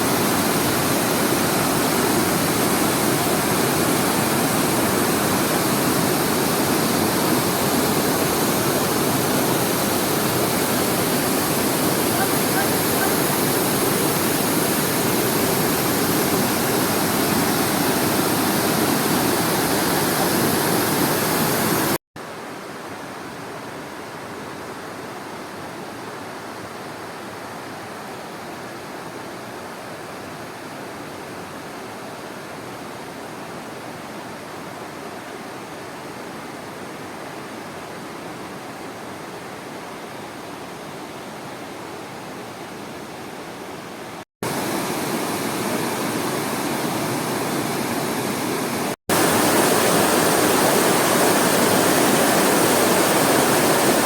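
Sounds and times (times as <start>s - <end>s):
waterfall rushing: 0.0s - 28.7s, 44.4s - 54.0s.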